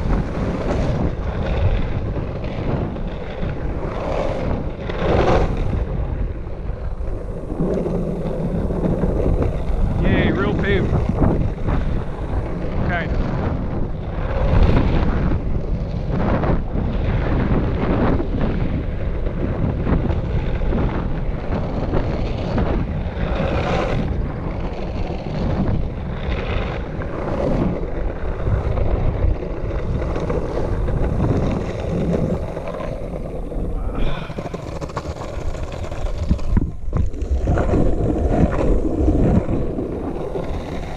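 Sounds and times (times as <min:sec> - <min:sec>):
skateboard wheels rumbling on concrete: 0:00.0 - 0:40.9
wind buffeting microphone: 0:00.0 - 0:40.9.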